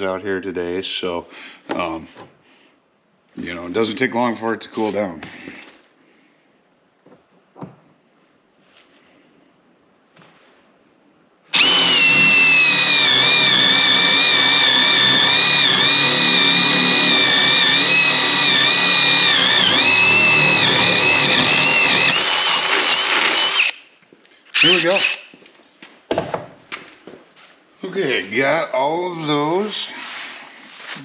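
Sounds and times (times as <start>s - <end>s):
impact driver motor whine: 11.6s - 23.7s.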